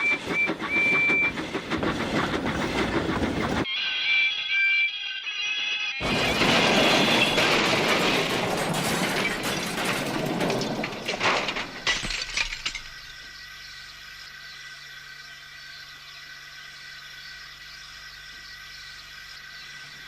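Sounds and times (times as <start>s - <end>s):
steam whistle: 3.7s - 6.0s
crash with splintering debris: 6.0s - 13.0s.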